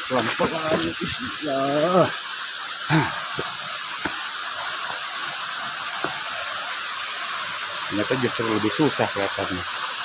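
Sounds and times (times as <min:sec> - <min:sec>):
waterfall rushing: 0:00.0 - 0:10.0.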